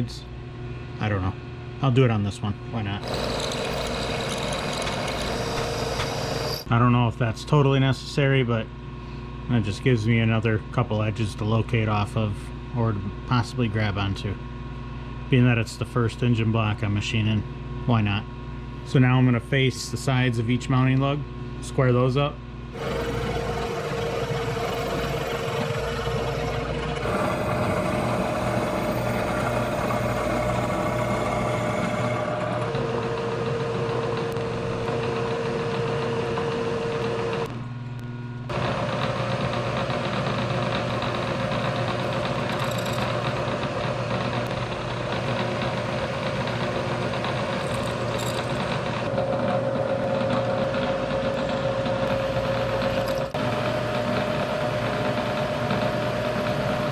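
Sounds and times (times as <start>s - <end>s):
milling machine cutting metal: 3.0s - 6.7s, 22.8s - 37.6s, 38.5s - 56.9s.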